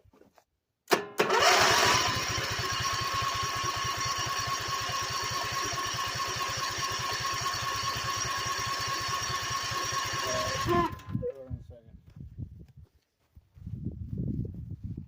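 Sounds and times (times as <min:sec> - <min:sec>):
small engine running: 0:01.2 - 0:11.2
high engine whine: 0:01.2 - 0:11.3.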